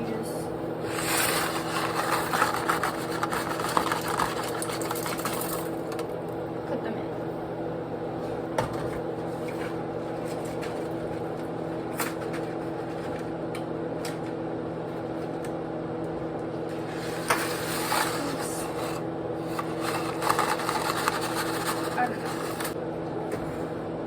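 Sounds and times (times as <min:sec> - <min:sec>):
steady hum: 0:00.0 - 0:24.0
pasta stirred in a pot: 0:00.8 - 0:06.0, 0:16.7 - 0:22.8.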